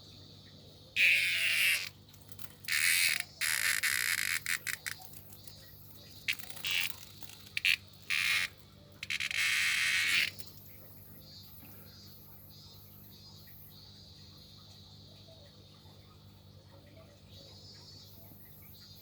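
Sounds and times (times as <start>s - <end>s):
cicada buzzing in harsh bursts: 1.0s - 10.6s.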